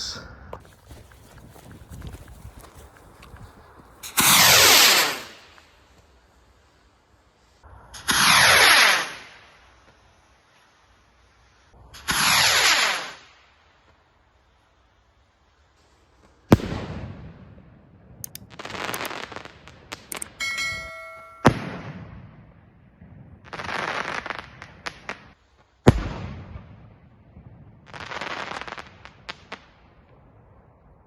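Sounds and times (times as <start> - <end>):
fireworks crackling and popping: 0.0 - 20.4, 23.3 - 30.2
fireworks bangs: 4.0 - 6.0, 7.9 - 10.0, 11.8 - 13.4, 16.5 - 29.7
high steady tone: 20.2 - 21.5.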